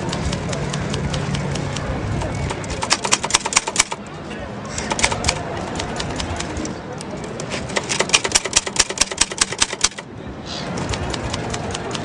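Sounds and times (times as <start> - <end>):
typewriter keys clattering: 0.0 - 4.0, 4.8 - 10.0.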